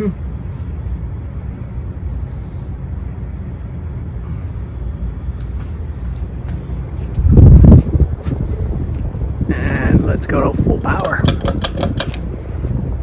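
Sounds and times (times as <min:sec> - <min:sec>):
ceiling fan air rush: 0:00.0 - 0:13.0
loud low wind buffet: 0:02.7 - 0:13.0.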